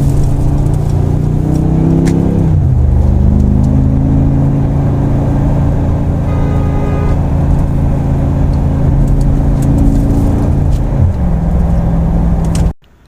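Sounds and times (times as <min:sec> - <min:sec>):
car engine running: 0:00.0 - 0:12.7.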